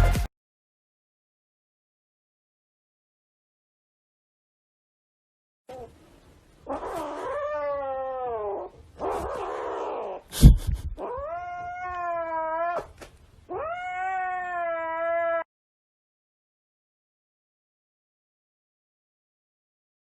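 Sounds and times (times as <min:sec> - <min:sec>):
cat yowling: 0:06.7 - 0:10.3, 0:11.0 - 0:15.5.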